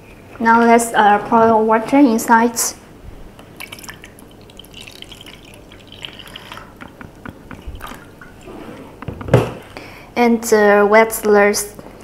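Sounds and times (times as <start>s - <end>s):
water trickling into a tank: 3.5s - 8.5s.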